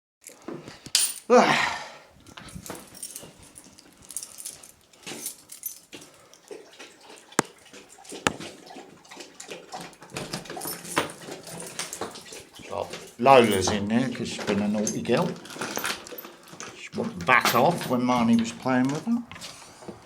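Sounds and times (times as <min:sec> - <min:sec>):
rustling and knocking: 0:08.3 - 0:08.5.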